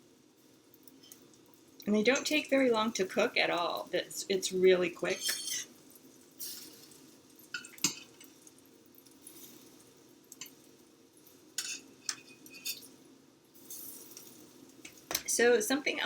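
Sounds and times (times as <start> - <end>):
utensils clinking against dishes: 5.0 - 5.7, 11.6 - 12.9.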